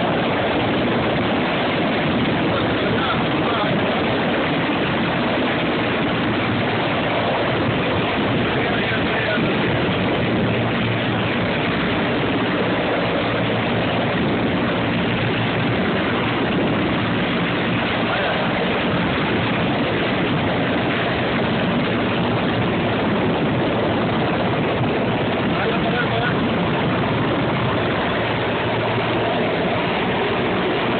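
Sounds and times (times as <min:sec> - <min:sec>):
helicopter engine and rotor: 0:00.0 - 0:30.9.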